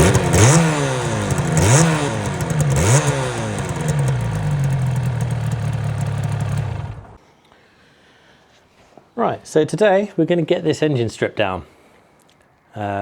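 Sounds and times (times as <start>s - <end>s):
motorcycle engine idling: 0.0s - 7.2s
two-stroke motorcycle engine revving: 0.0s - 7.2s.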